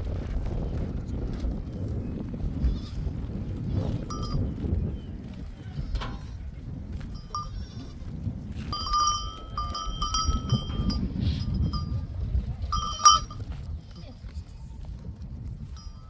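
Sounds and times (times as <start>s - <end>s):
wind rumble on microphone: 0.0s - 16.0s
animal bells clinking: 3.8s - 14.2s, 15.6s - 16.0s.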